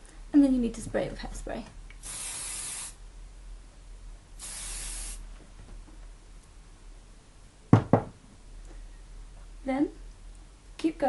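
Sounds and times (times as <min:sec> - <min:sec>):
hairspray hissing: 0:02.0 - 0:03.0, 0:04.4 - 0:05.2.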